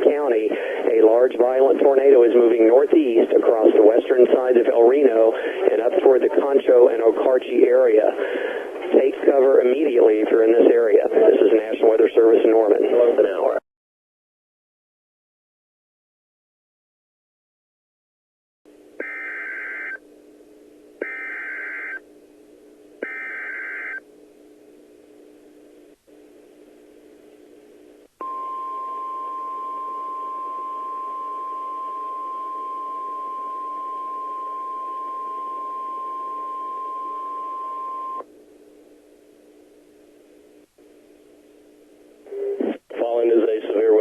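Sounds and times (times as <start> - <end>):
radio hiss and hum: 0.0 - 13.6, 21.0 - 28.1, 34.2 - 44.0
warning alarm tone: 19.0 - 20.0, 21.0 - 22.0, 23.0 - 24.0, 28.2 - 38.2.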